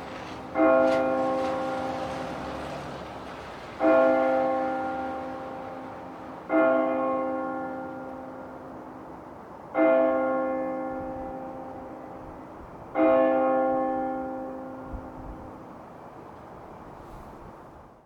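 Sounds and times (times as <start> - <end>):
church bell striking: 0.0 - 2.5, 3.8 - 15.6.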